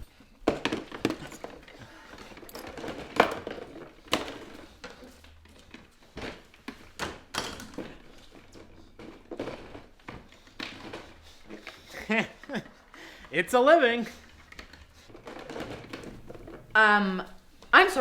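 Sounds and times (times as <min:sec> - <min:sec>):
dishes knocking and clunking: 0:15.1 - 0:16.8.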